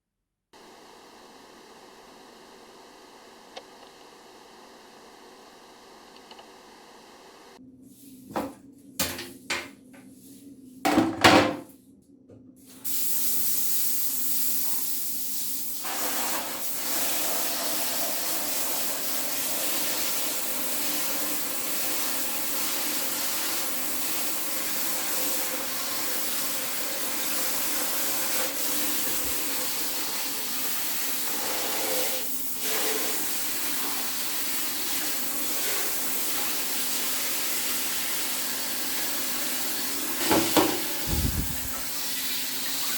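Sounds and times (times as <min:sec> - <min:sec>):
spray can hissing: 0:12.8 - 0:20.7.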